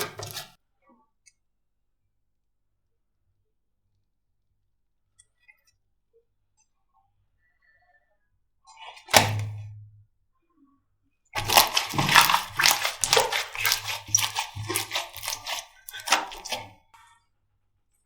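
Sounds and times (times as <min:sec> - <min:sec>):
slime crackling pops: 0:11.4 - 0:16.7.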